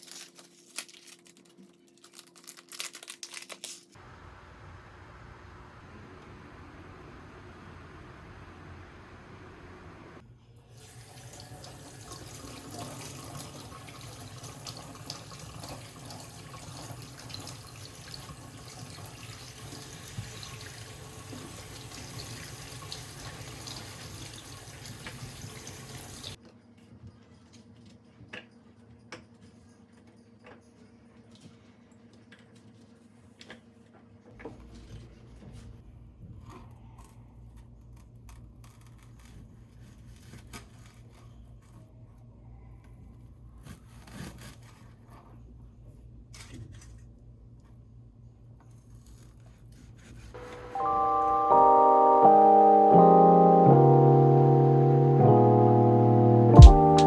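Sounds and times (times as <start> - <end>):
tap water running into sink: 10.8 - 26.4.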